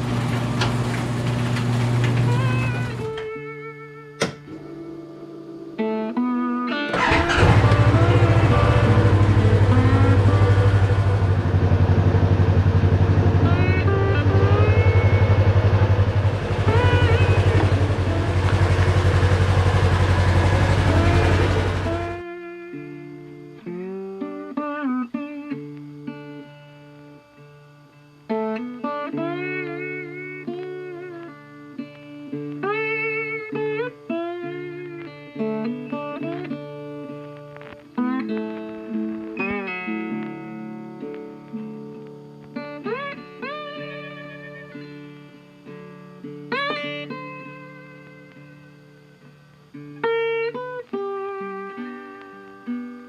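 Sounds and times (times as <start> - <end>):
plucked guitar music: 0.0 - 53.0
engine-like noise: 6.9 - 22.2.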